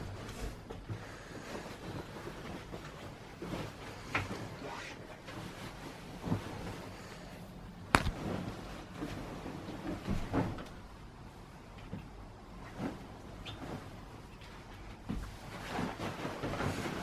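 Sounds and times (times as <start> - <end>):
knocks and bumps of handling: 7.9 - 8.5.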